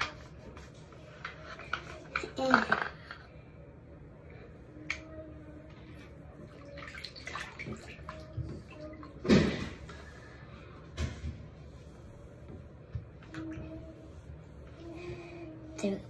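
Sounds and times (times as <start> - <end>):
water sloshing and splashing: 5.8 - 10.2.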